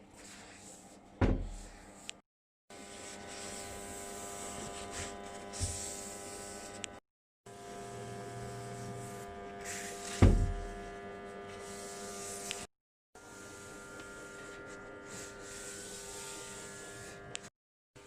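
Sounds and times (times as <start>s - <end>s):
small electric motor humming: 2.7s - 17.5s
heavy thump: 10.2s - 10.5s.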